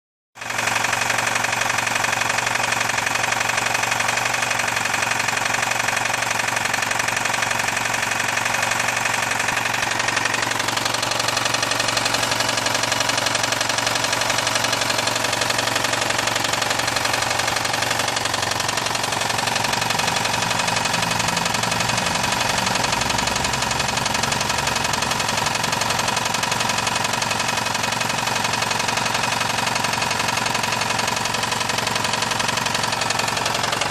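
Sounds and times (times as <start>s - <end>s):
car engine knocking: 0.4s - 33.9s.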